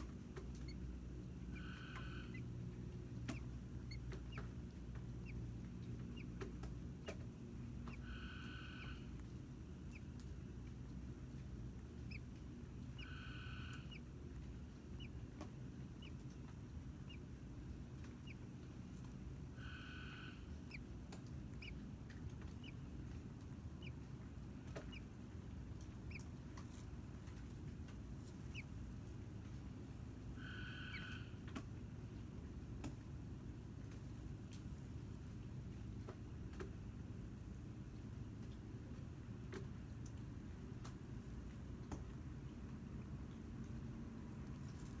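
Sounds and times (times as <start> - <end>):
steady low hum: 0.0 - 45.0
faint bird chirps: 1.5 - 2.5, 7.8 - 9.1, 12.9 - 14.1, 19.6 - 20.9, 30.4 - 31.4.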